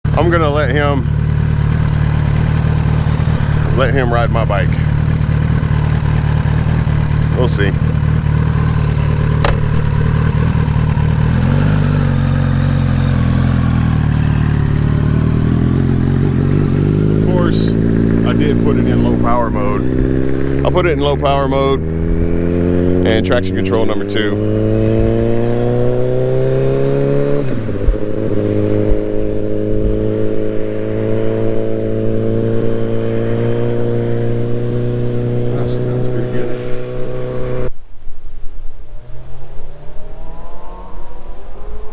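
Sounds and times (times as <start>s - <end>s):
motorcycle engine idling: 0.1s - 23.2s.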